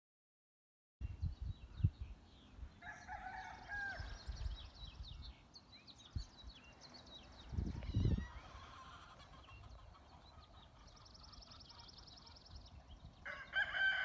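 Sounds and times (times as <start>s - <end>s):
small birds chirping: 1.0s - 14.0s
rooster crowing: 2.8s - 4.4s, 13.2s - 14.0s.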